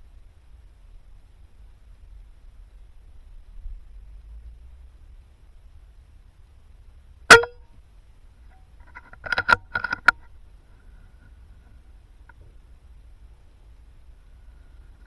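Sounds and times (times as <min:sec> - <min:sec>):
air rifle crack: 0:07.3 - 0:07.6.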